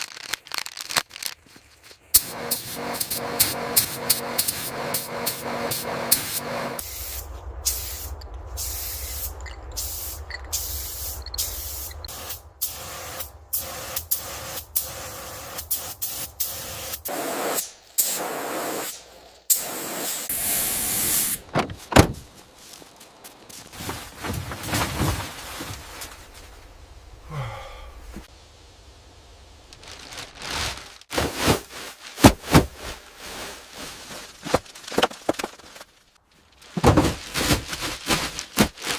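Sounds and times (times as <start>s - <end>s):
short hissing sprays: 2.2s - 21.4s.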